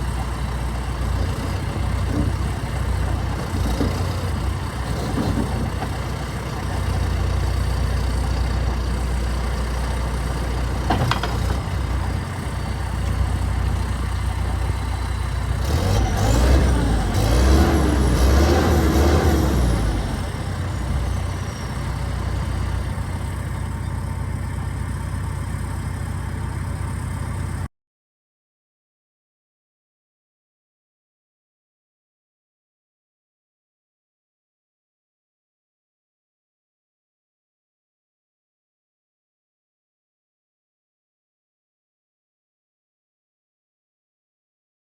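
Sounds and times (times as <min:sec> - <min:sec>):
diesel engine running: 0:00.0 - 0:27.7.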